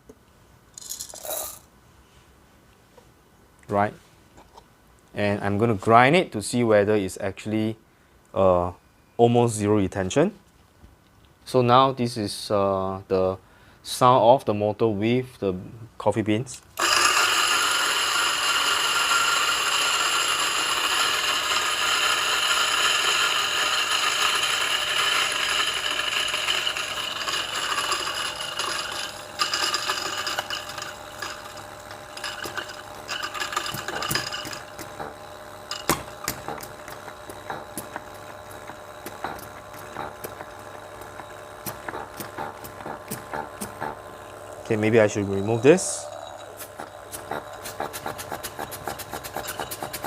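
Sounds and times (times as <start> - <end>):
coffee grinder whirring: 0.8 - 1.6, 16.8 - 50.0.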